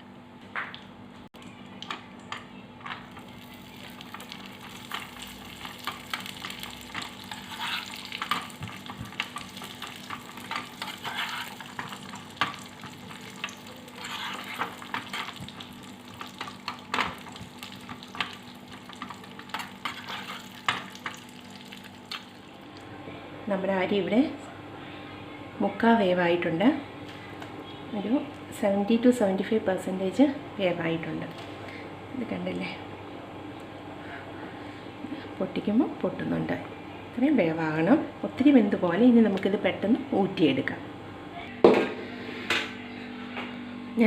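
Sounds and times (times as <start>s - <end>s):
spoon stirring in a pan: 3.1s - 22.4s
nuts sizzling in a pan: 3.1s - 22.7s.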